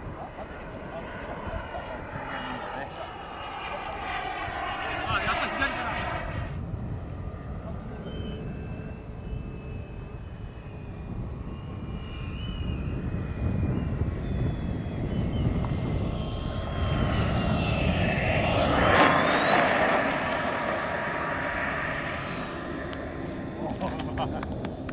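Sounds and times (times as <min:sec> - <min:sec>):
jet turbine engine passing by: 0:00.0 - 0:24.9.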